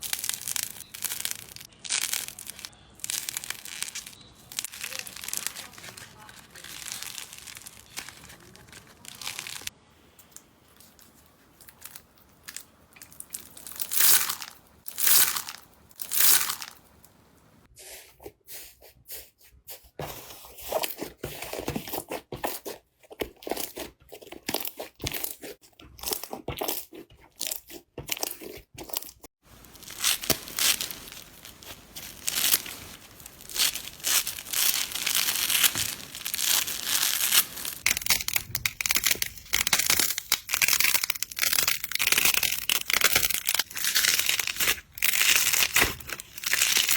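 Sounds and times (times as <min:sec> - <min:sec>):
slime crackling and tearing: 0:00.0 - 0:09.7, 0:10.8 - 0:17.1, 0:27.4 - 0:46.9.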